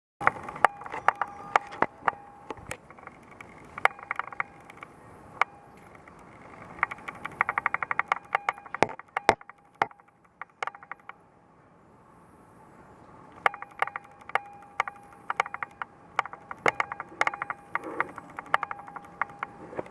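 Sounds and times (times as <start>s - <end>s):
wire cage clicking and rattling: 13.4s - 19.9s.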